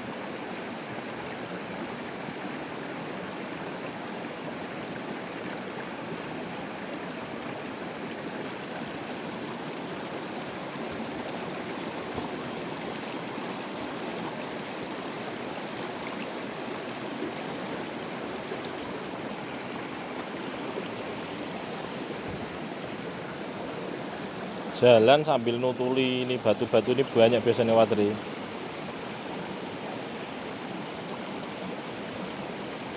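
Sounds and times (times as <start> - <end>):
stream flowing over stones: 0.0 - 32.9.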